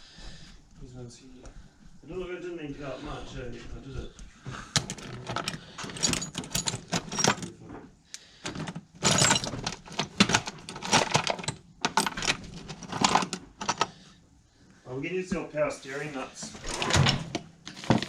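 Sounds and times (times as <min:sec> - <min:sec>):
nuts and washers clinking: 0:04.8 - 0:07.8, 0:08.4 - 0:14.0.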